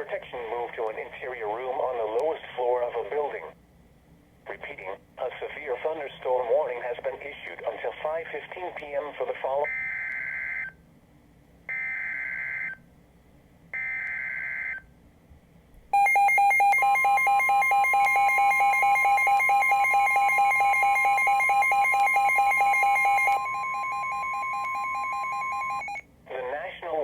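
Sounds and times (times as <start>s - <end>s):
two-pitch attention tone: 16.0s - 26.0s.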